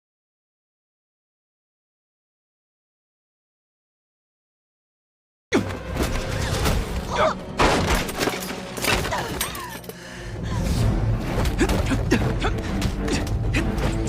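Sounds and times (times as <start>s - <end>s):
background music: 5.5s - 14.0s
sharp hits crashes and thuds: 6.0s - 9.2s.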